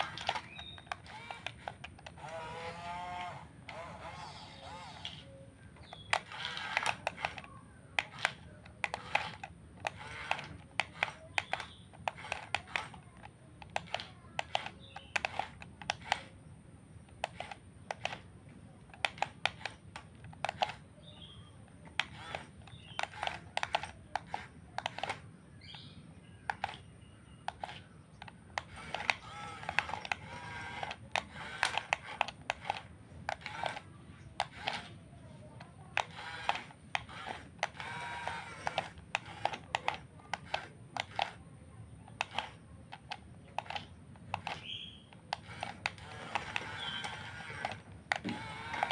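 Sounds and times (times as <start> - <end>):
toy excavator clicks and clatters: 0.0 - 48.9.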